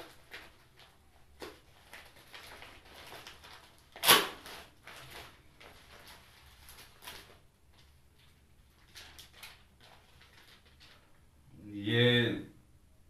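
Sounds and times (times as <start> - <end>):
packaging rustling and crinkling: 0.0 - 11.2.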